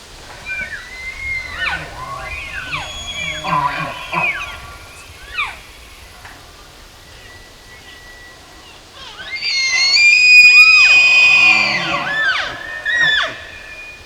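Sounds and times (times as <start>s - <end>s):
elk bugling whistle: 0.0s - 14.0s.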